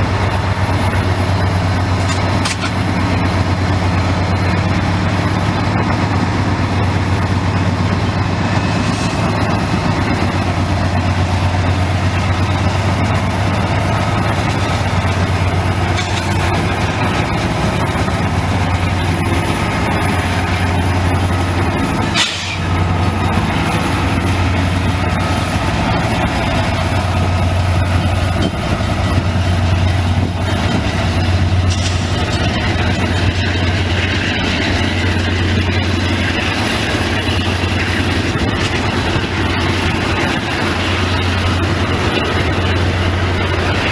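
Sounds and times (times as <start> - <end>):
diesel locomotives droning: 0.0 - 43.9.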